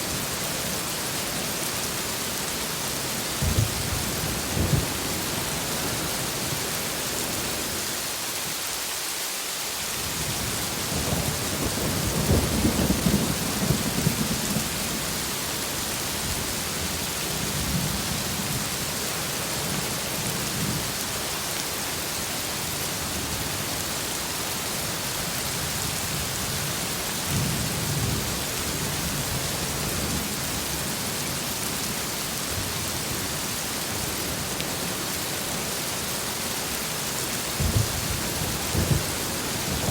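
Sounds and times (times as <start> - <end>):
heavy rain falling: 0.0 - 39.9
thunder rumbling: 3.4 - 6.7, 10.9 - 15.4, 37.6 - 39.9.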